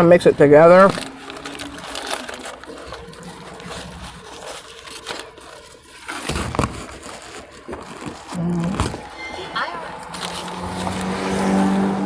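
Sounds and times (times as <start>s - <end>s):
paper wrappers crinkling: 0.0s - 12.0s
person chewing: 0.0s - 12.0s.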